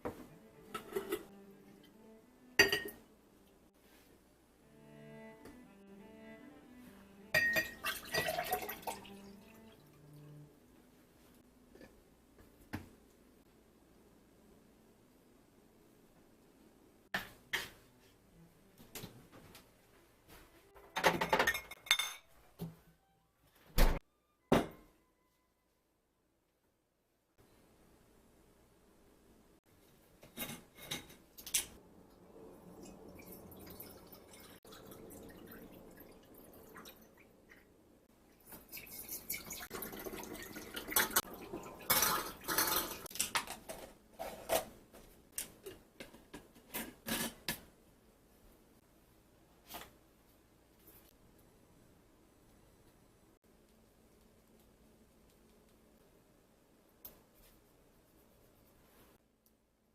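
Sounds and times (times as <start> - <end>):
dishes and containers handled: 0.0 - 1.4, 2.6 - 3.0, 7.4 - 9.2, 20.8 - 22.4, 30.2 - 31.8, 38.4 - 44.8
clinks and knocks of dishes: 0.7 - 1.3, 2.6 - 3.0, 7.4 - 8.5, 20.9 - 22.3, 41.9 - 43.1
containers clinking and knocking: 7.4 - 9.2, 39.7 - 43.7.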